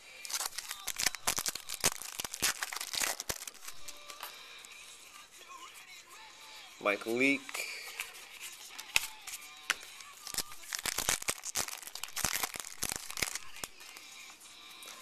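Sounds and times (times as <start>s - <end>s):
foil wrapper crinkling: 0.2s - 4.4s, 7.6s - 14.2s.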